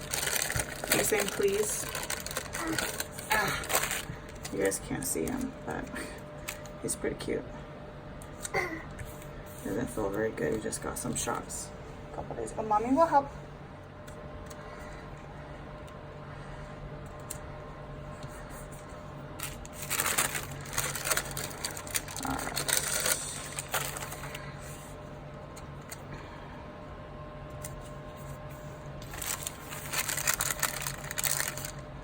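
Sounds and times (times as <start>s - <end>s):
sticker paper rustling: 0.0s - 4.6s, 19.4s - 24.4s, 29.0s - 31.8s.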